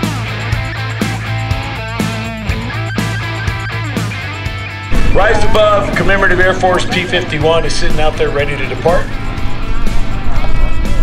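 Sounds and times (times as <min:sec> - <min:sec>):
music over loudspeakers: 0:00.0 - 0:11.0
steady low rumble: 0:04.8 - 0:11.0.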